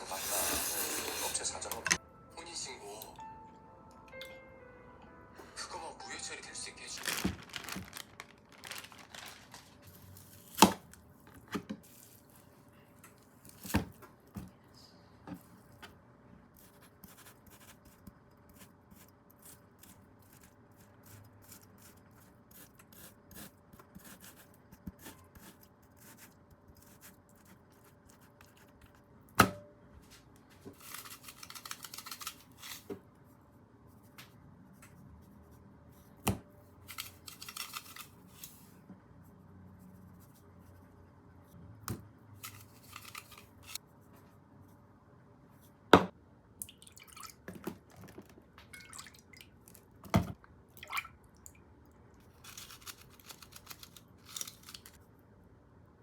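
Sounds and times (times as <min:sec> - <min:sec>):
plastic wrapper rustling: 0:06.7 - 0:12.6, 0:52.3 - 0:55.0.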